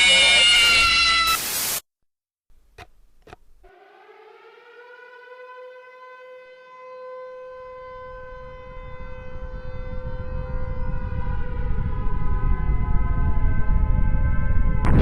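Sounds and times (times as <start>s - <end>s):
train horn: 5.4s - 14.8s
low rumble: 9.9s - 15.0s.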